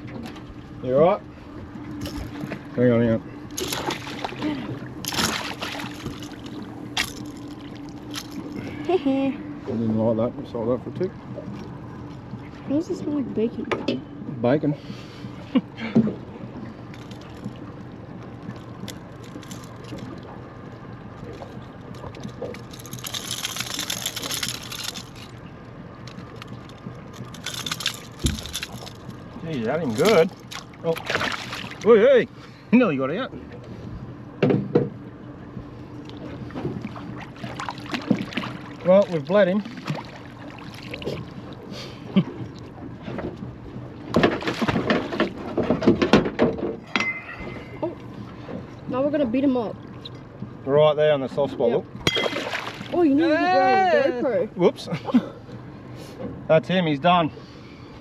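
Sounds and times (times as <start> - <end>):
steady low hum: 0.0 - 58.0
water splashing and trickling: 3.4 - 9.2, 16.3 - 32.4, 36.0 - 41.8, 52.0 - 53.6
knocks and rattles on a boat: 10.1 - 14.7, 15.3 - 20.2, 26.0 - 32.2, 34.3 - 53.0.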